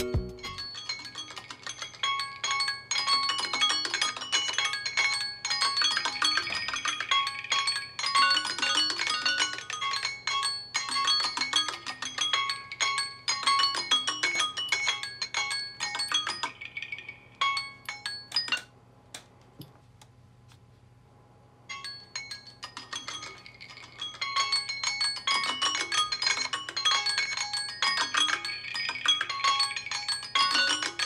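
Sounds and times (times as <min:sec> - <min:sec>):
phone ringtones chiming: 0:21.7 - 0:31.0.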